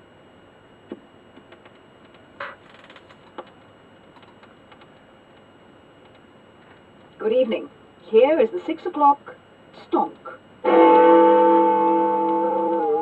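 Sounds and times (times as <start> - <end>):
record player hiss: 0.0 - 13.0
vinyl clicks and pops: 0.9 - 7.2.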